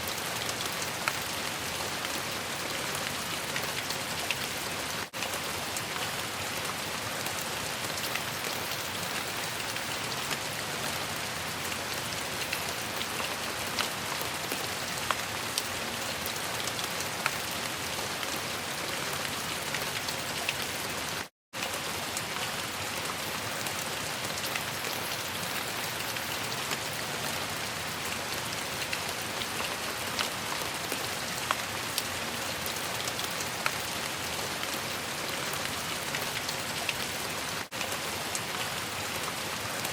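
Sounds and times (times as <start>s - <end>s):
steady rain hiss: 0.0s - 39.9s
raindrops ticking: 7.2s - 17.5s.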